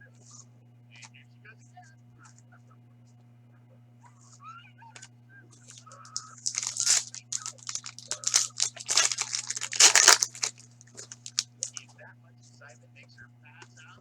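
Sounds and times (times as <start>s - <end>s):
foil wrapper tearing and crinkling: 5.7s - 11.8s.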